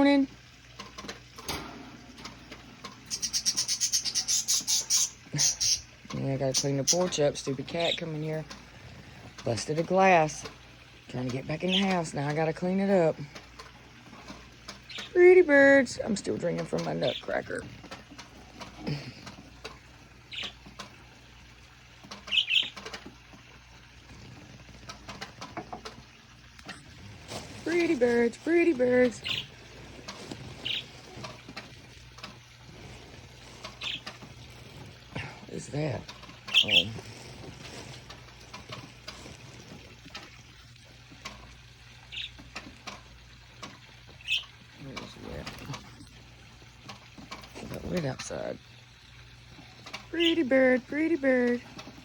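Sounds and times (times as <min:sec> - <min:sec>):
rain dripping: 0:00.0 - 0:52.0
budgies chirping: 0:03.0 - 0:08.6, 0:11.4 - 0:12.6, 0:14.9 - 0:17.8, 0:20.3 - 0:20.6, 0:22.2 - 0:22.9, 0:27.3 - 0:31.4, 0:32.8 - 0:34.2, 0:35.2 - 0:38.0, 0:42.1 - 0:42.4, 0:44.1 - 0:45.8
budgie chirp: 0:03.1 - 0:05.9.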